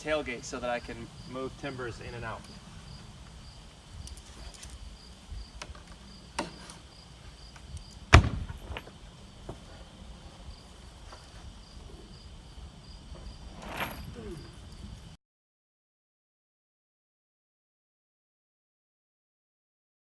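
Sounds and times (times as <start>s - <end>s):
crickets chirping: 0.0s - 15.2s
thump: 8.1s - 8.9s
brushing scrape: 13.2s - 14.2s.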